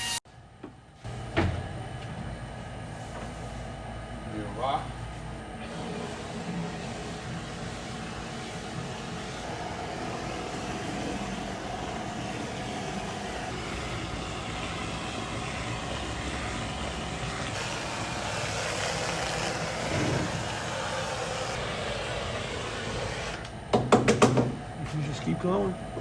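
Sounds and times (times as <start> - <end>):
steady machine noise: 5.5 - 23.8.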